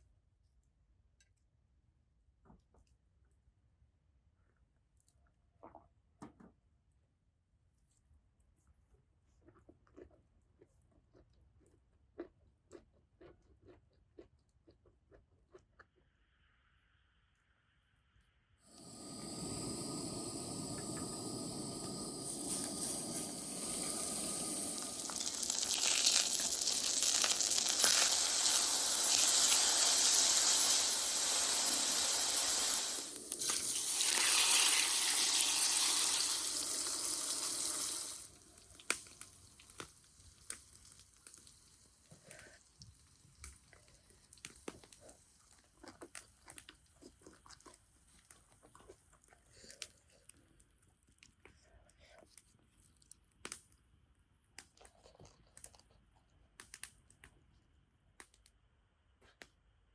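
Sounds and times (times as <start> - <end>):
steady hissing rush: 18.7 - 26.7, 27.4 - 33.7.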